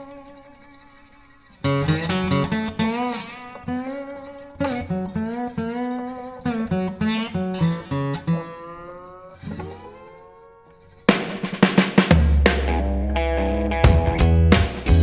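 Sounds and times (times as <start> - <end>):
acoustic guitar picking notes: 1.6 - 9.9, 11.1 - 15.0
full band with drums and bass: 11.1 - 15.0.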